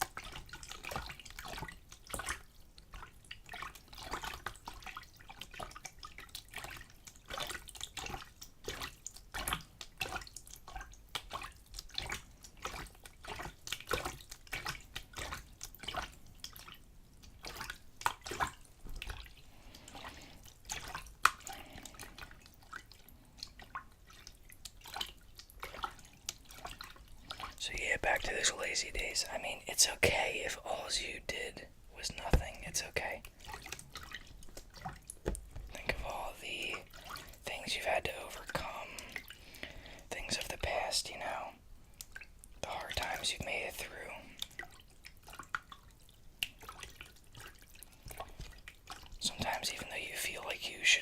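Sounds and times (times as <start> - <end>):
water splashing in container: 0.0 - 28.2, 30.4 - 49.8.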